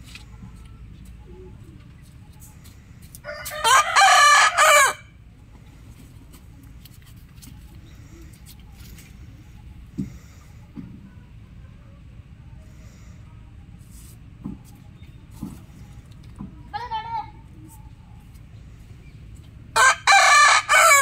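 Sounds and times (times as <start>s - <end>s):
low background rumble: 0.0s - 21.0s
rooster crowing: 3.2s - 5.1s, 19.8s - 21.0s.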